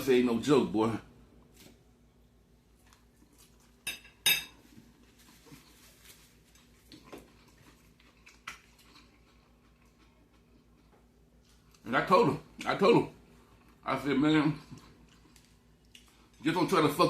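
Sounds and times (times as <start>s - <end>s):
cutlery clinking against a dish: 3.8s - 4.6s.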